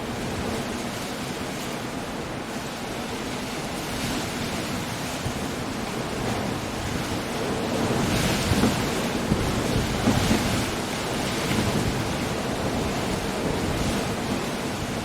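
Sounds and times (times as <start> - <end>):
wind: 0.0 - 15.0
surf breaking on rocks: 3.8 - 15.0.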